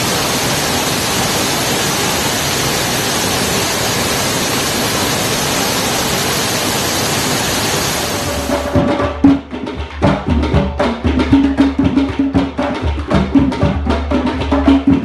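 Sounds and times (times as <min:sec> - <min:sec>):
steady rushing noise: 0:00.0 - 0:09.8.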